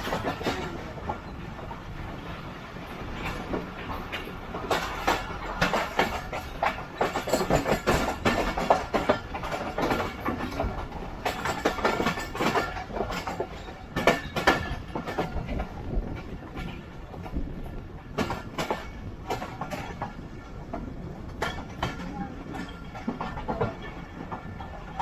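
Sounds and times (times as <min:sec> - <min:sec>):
steady train rumble: 0:00.0 - 0:25.0
train wheels clattering: 0:00.0 - 0:25.0.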